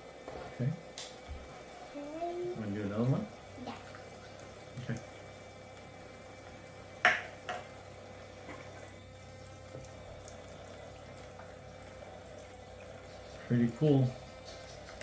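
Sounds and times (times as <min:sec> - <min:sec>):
thin stream of water flowing: 0:08.7 - 0:15.0.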